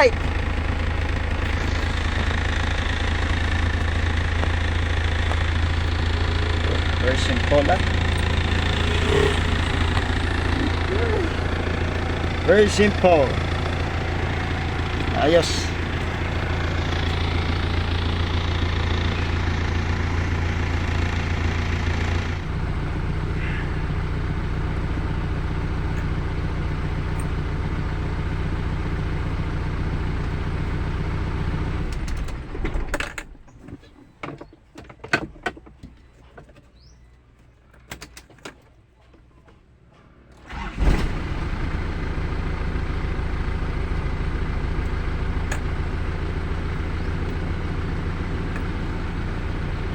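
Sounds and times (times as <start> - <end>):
engine cranking and starting: 0.0 - 19.3, 40.3 - 49.9
car engine idling: 0.0 - 32.1, 40.4 - 49.9.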